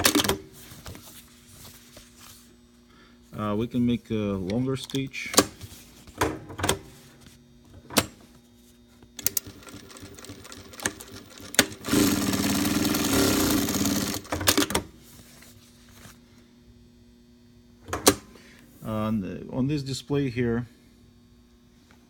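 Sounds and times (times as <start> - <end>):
sewing machine running fast: 9.3 - 14.7.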